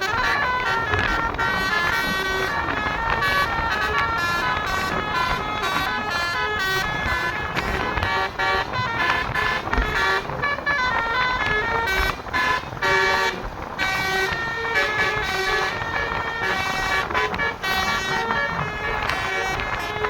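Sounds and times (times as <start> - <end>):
multi-tone air horn melody: 0.0 - 20.0.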